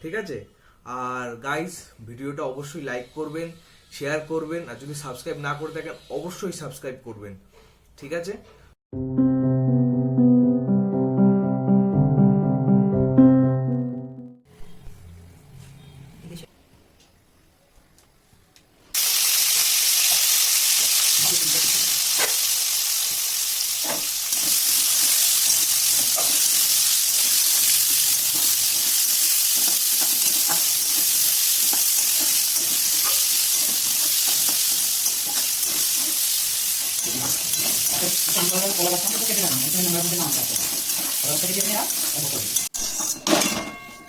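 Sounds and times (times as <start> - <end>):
food sizzling in hot oil: 19.0 - 43.0
metal spatula scraping pan: 40.3 - 43.6.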